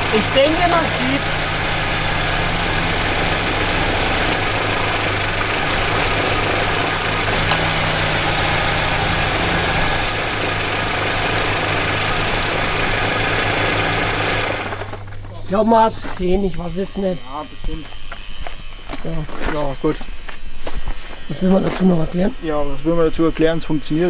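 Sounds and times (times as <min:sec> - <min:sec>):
car engine idling: 0:00.0 - 0:16.5.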